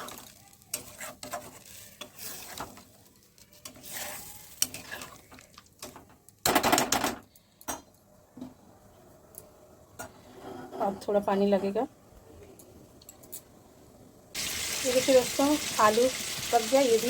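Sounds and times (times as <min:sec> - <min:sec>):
spoon stirring and scraping pan: 0:00.0 - 0:06.2.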